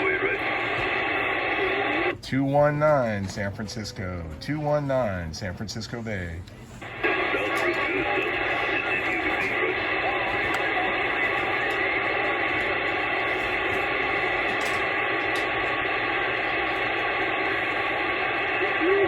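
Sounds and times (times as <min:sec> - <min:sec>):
radio static hiss: 0:00.0 - 0:02.2, 0:06.7 - 0:19.0.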